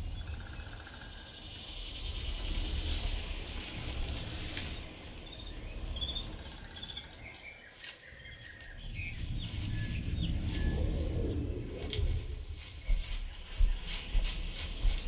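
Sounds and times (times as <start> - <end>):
birds chirping: 0.0 - 15.0
low rumble: 8.8 - 15.0.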